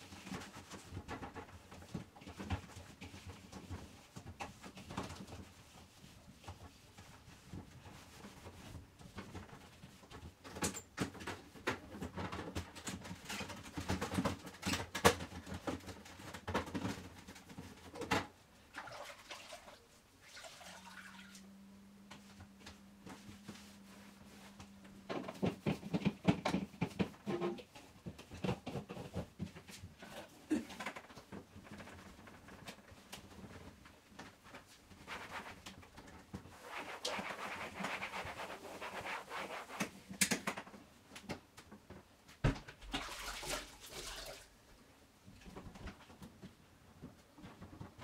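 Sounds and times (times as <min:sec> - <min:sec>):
steady low hum: 0:21.3 - 0:25.4.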